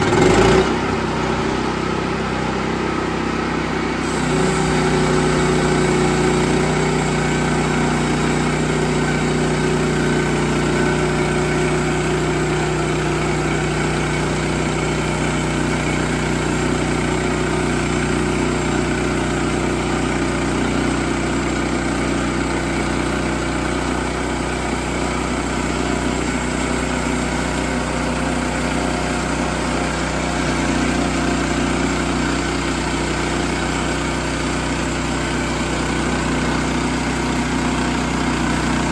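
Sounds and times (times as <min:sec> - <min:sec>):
sawmill engine running: 0:00.0 - 0:38.9.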